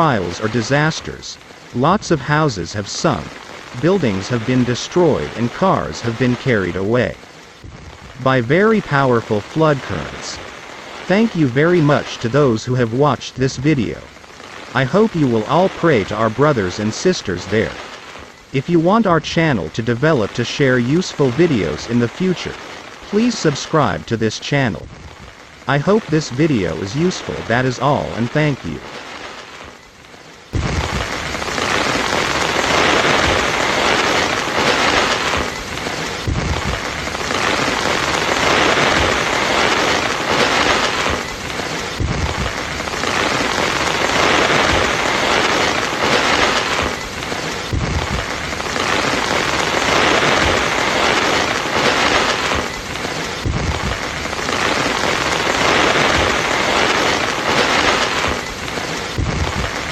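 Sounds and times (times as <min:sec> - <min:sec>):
heavy rain pouring: 0:00.0 - 0:59.9.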